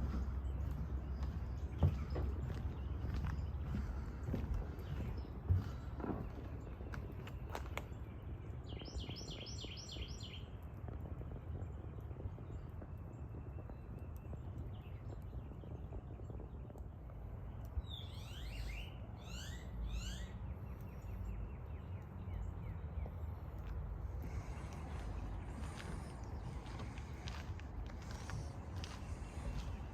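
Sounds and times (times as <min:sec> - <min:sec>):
steady low rumble: 0:00.0 - 0:17.9, 0:19.8 - 0:29.9
songbird singing: 0:00.0 - 0:29.9.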